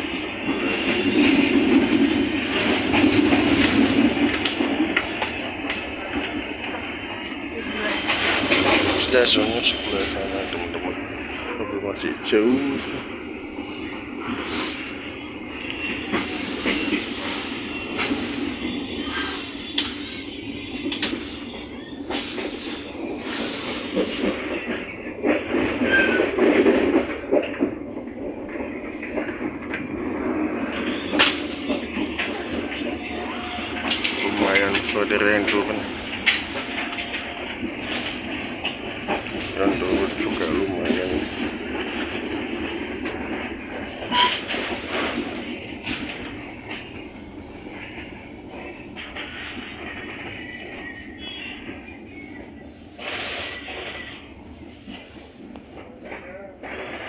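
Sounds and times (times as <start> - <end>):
train wheels rumbling on rails: 0.0 - 57.0
brief wheel squeal: 1.0 - 2.2, 25.8 - 26.3, 33.0 - 35.0.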